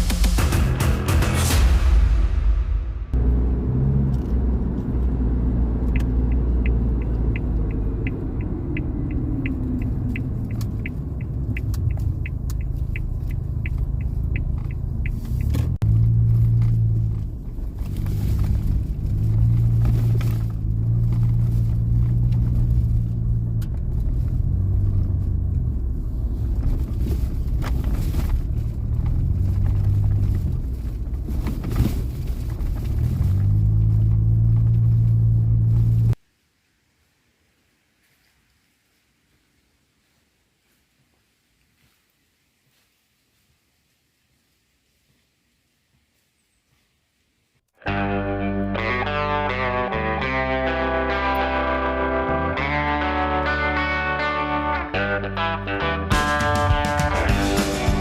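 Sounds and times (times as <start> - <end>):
car engine accelerating: 0.0 - 36.2, 47.9 - 58.0
light regular ticking: 5.6 - 15.8.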